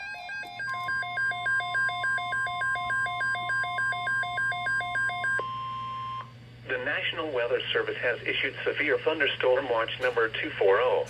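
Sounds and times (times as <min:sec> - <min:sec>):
steady single-pitch alert tone: 0:00.0 - 0:06.3.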